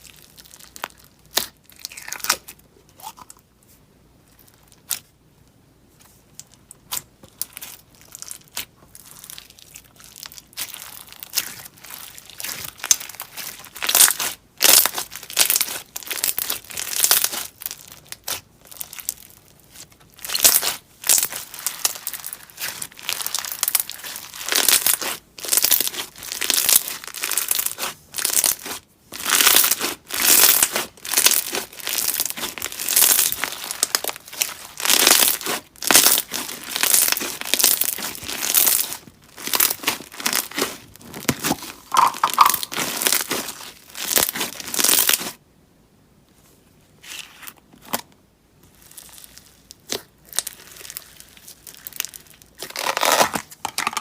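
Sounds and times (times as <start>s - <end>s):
slime squeezed by hand: 6.9s - 45.4s.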